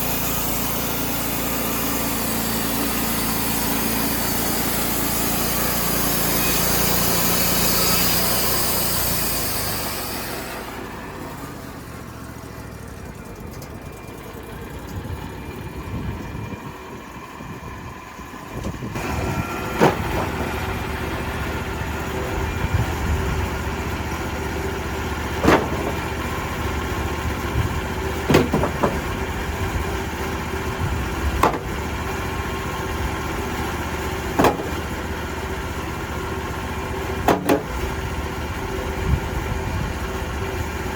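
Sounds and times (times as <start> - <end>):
band saw blade cutting wood: 0.0 - 11.8, 19.0 - 22.5, 23.5 - 32.8, 33.4 - 35.4, 37.2 - 38.0
engine running steadily: 0.0 - 40.9.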